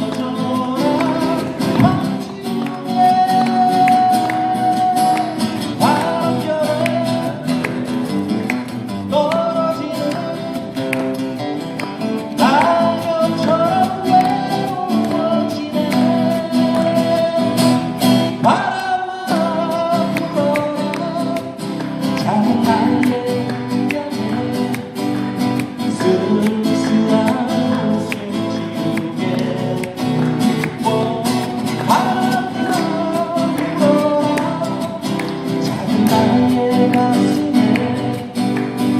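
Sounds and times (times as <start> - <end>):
live band music: 0.0 - 18.6
guitars playing chords: 0.0 - 38.9.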